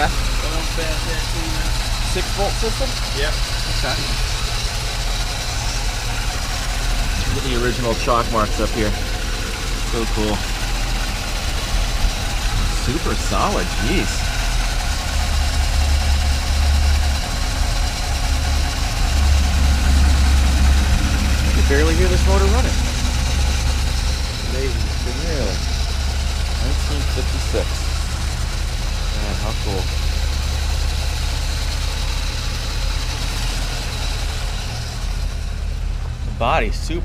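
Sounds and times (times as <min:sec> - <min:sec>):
car engine idling quietly: 0:00.0 - 0:37.0.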